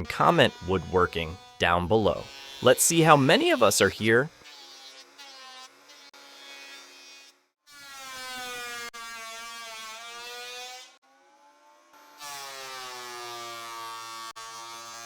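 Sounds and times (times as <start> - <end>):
power tool motor humming: 0.0 - 15.0.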